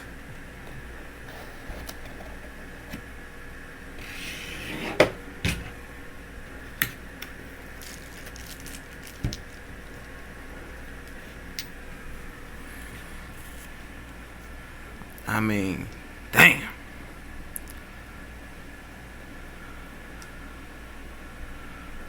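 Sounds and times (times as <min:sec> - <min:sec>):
packaging rustling: 0:07.4 - 0:10.2
package being opened by hand: 0:07.6 - 0:10.1.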